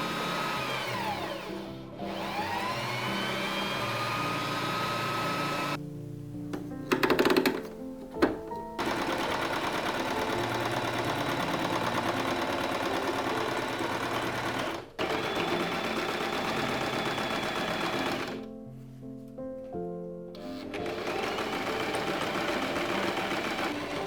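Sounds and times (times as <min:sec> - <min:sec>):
electric sewing machine stitching: 0:00.0 - 0:05.8, 0:08.8 - 0:18.5, 0:20.4 - 0:24.0
soft background music: 0:00.0 - 0:24.0.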